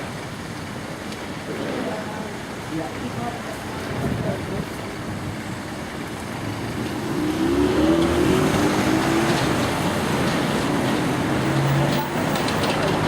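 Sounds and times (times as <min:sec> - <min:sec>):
road noise: 0:00.0 - 0:13.0
vehicle engine: 0:06.0 - 0:13.0.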